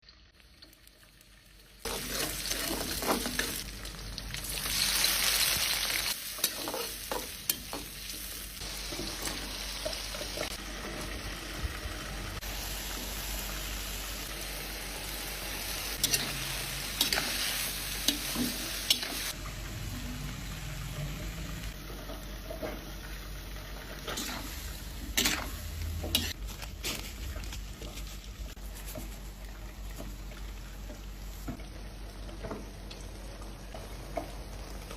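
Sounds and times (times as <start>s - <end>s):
food sizzling in a pan: 0.0s - 26.4s.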